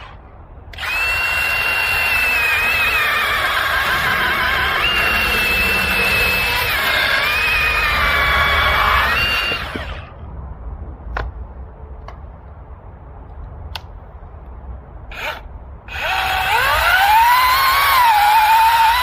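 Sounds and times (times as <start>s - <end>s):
chainsaw motor whining: 0.0s - 10.1s, 15.1s - 19.0s.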